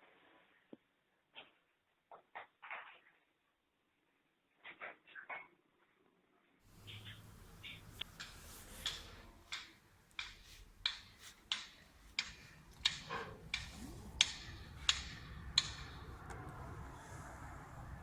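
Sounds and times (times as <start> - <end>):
low steady hum: 6.7 - 18.0
sharp knocks: 6.8 - 18.0.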